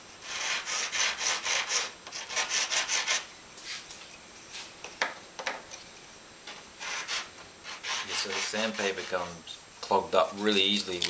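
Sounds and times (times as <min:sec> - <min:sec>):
sandpaper rasping on plaster: 0:00.2 - 0:03.8, 0:06.8 - 0:09.4.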